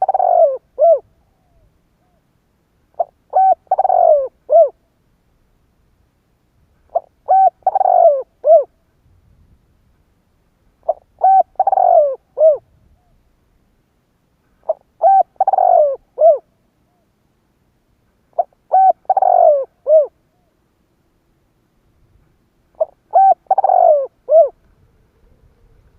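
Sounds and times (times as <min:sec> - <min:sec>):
dove cooing: 0:00.0 - 0:02.2, 0:03.0 - 0:04.8, 0:06.9 - 0:08.7, 0:10.8 - 0:13.2, 0:14.6 - 0:17.1, 0:18.3 - 0:20.5, 0:22.8 - 0:25.9.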